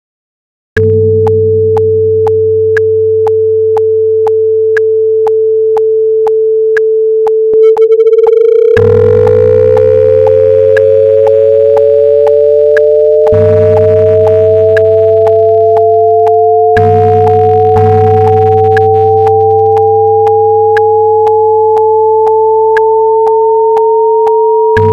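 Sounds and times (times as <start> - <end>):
steady pure tone: 1.0 - 24.9
low drone: 7.7 - 24.9.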